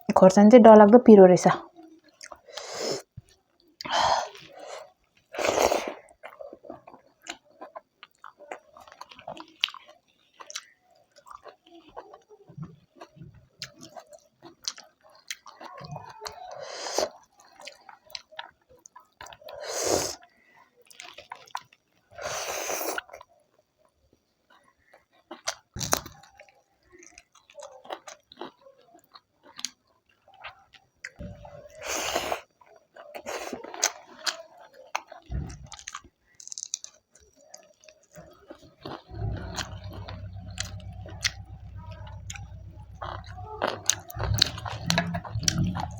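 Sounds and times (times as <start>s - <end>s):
person chewing food: 2.0s - 23.6s, 24.4s - 45.9s
low hum: 39.1s - 45.9s.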